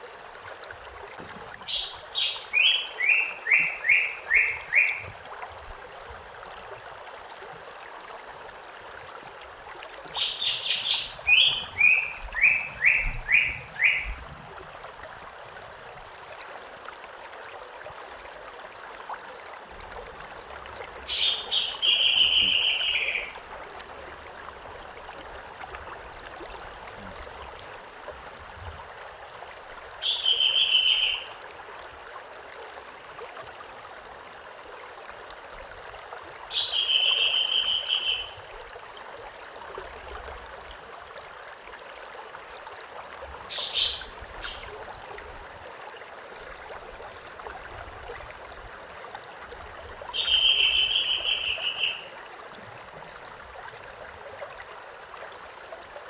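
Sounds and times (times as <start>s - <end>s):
songbird trilling: 1.7s - 5.0s, 10.2s - 14.1s, 21.1s - 23.4s, 30.0s - 31.3s, 36.5s - 38.4s, 43.5s - 44.9s, 50.2s - 52.1s
river water rushing: 1.7s - 5.6s, 9.5s - 14.1s, 20.4s - 28.3s.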